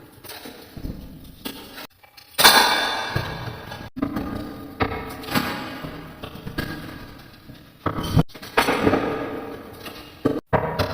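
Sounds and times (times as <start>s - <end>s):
thuds and knocks: 0.8s - 1.3s.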